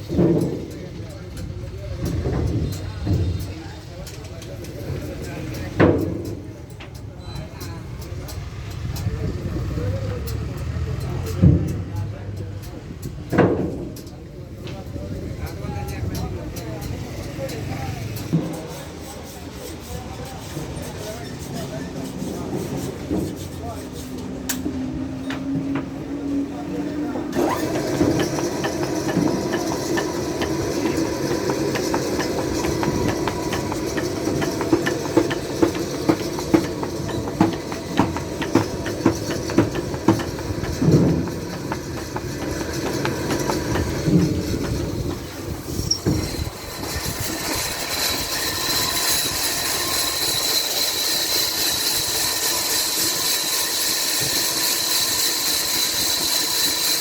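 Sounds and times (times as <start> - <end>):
sawmill machinery clattering rumble: 0.0 - 57.0
regular knocking: 27.7 - 44.8.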